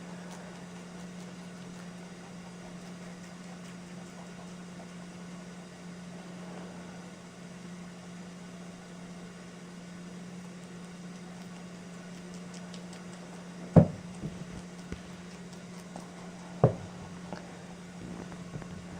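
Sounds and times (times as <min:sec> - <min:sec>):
rabbits chewing crunchily: 0:00.0 - 0:07.4, 0:08.2 - 0:18.9
low hum: 0:12.0 - 0:18.9
sharp thumps: 0:13.8 - 0:14.5, 0:16.6 - 0:17.0.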